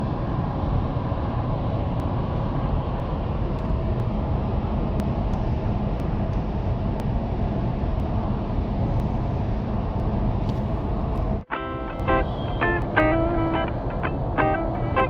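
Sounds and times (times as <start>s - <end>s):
vehicle engine rumble: 0.0s - 14.8s.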